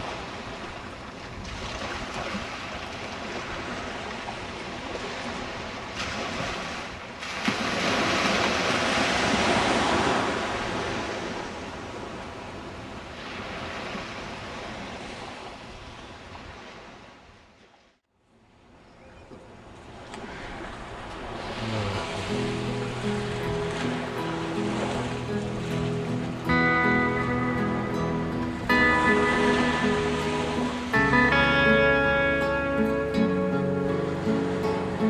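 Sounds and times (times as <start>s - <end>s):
surf breaking on beach: 0.0s - 17.0s, 19.6s - 35.0s.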